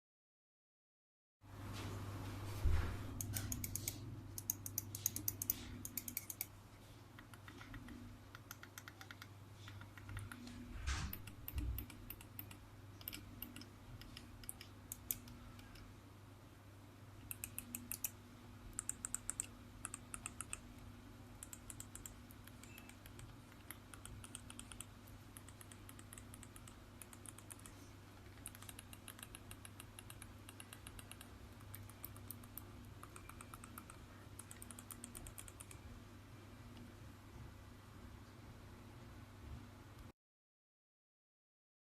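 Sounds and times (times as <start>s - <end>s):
steady low hum: 1.5s - 40.1s
mouse buttons clicking: 7.2s - 10.4s, 17.2s - 20.7s, 21.4s - 35.8s.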